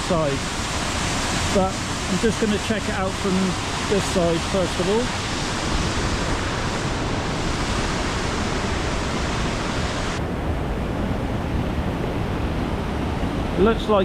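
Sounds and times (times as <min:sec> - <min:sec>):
waterfall rushing: 0:00.0 - 0:10.2.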